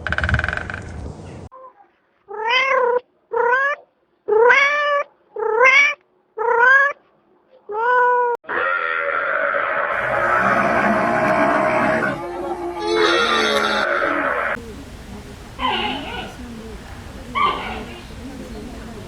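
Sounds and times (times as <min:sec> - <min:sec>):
cat meowing: 0:02.3 - 0:07.0, 0:15.6 - 0:16.4, 0:17.4 - 0:18.1
steady noisy sound: 0:14.5 - 0:19.0.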